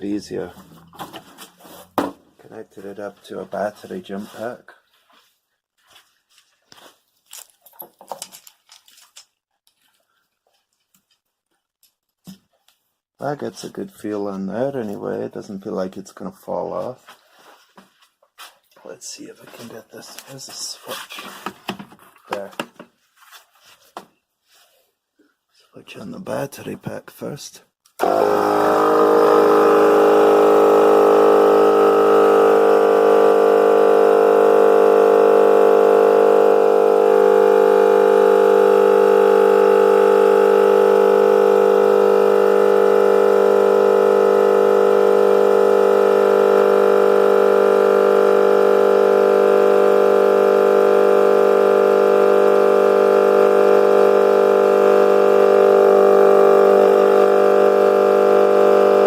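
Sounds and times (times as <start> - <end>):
air compressor running: 28.0 - 59.0.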